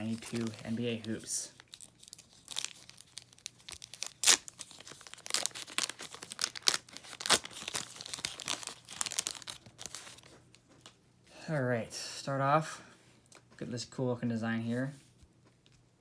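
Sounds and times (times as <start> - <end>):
wax wrapper tearing and crinkling: 0.0 - 11.0.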